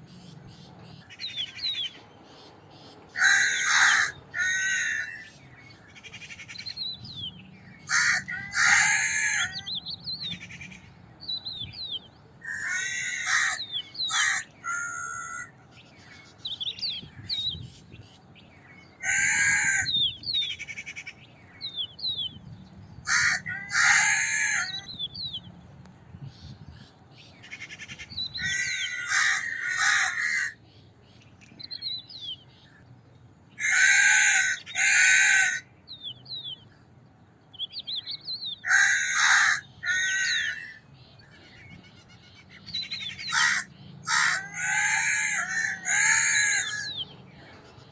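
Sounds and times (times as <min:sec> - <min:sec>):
crows cawing: 0:03.1 - 0:05.3, 0:07.9 - 0:09.7, 0:12.4 - 0:16.3, 0:19.0 - 0:20.1, 0:23.0 - 0:24.9, 0:27.5 - 0:30.6, 0:33.6 - 0:35.7, 0:38.6 - 0:40.8, 0:43.0 - 0:47.0.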